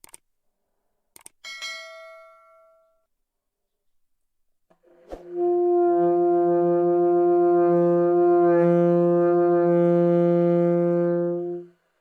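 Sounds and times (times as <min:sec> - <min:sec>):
saxophone long low note: 0:05.2 - 0:11.8.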